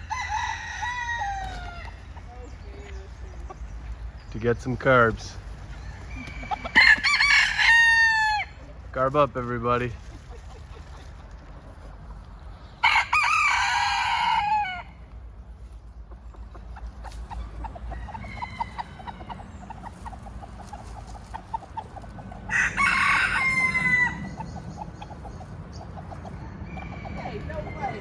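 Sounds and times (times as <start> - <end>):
rooster crowing: 0.0 - 2.0, 5.8 - 8.6, 12.8 - 15.0, 18.0 - 19.4, 22.5 - 24.5
hens clucking softly: 14.3 - 28.0.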